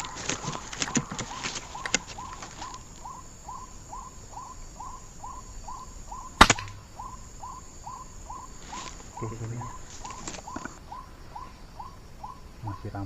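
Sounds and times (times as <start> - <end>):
recorded waterhen call: 0.0 - 13.0
air rifle shot: 6.4 - 6.8.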